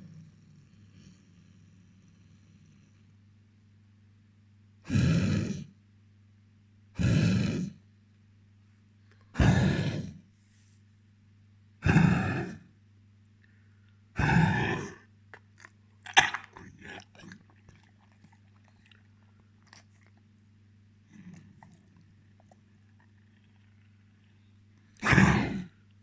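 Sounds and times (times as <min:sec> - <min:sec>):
dog coughing: 0:09.4 - 0:10.0, 0:11.8 - 0:12.6, 0:14.2 - 0:20.3, 0:21.1 - 0:24.4, 0:25.0 - 0:25.7
soft mouth sounds: 0:14.2 - 0:26.0.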